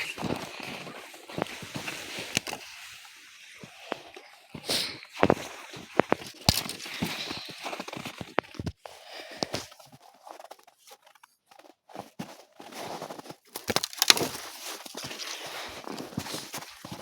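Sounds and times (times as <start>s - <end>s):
footsteps crunching in snow: 0.0s - 8.6s, 11.6s - 17.0s
dry branches snapping: 13.5s - 15.3s.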